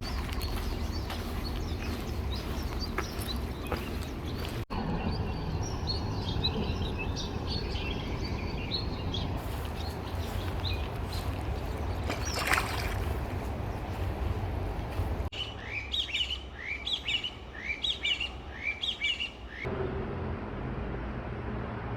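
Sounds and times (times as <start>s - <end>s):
low outdoor rumble: 0.0s - 15.3s
small birds chirping: 0.0s - 19.7s.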